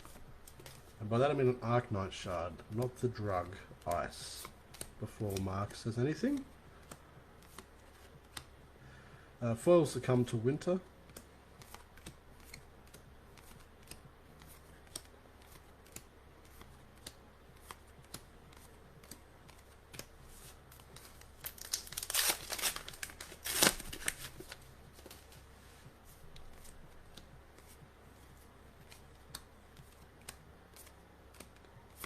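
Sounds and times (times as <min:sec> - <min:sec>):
foil wrapper crinkling and tearing: 0:21.4 - 0:24.6.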